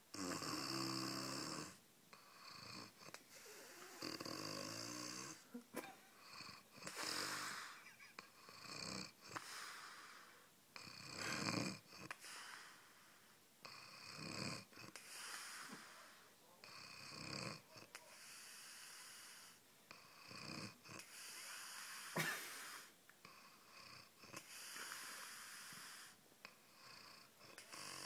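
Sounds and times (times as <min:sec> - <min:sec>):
wheezy snoring: 0:00.1 - 0:05.6, 0:06.2 - 0:28.0
sharp snort: 0:10.8 - 0:12.6.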